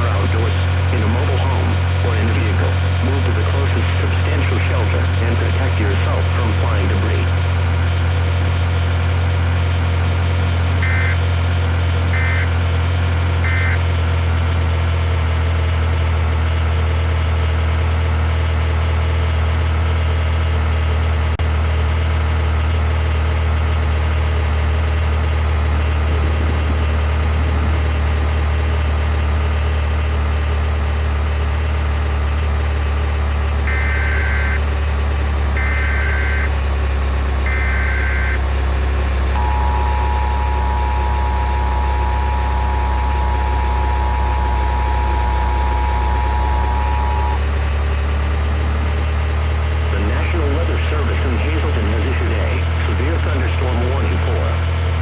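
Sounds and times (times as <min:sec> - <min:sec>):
car engine and road noise: 0:00.0 - 0:55.0
short electronic beeps: 0:10.8 - 0:11.4, 0:12.2 - 0:12.7, 0:13.4 - 0:13.9, 0:33.7 - 0:34.6, 0:35.6 - 0:36.5, 0:37.5 - 0:38.4, 0:39.4 - 0:47.4.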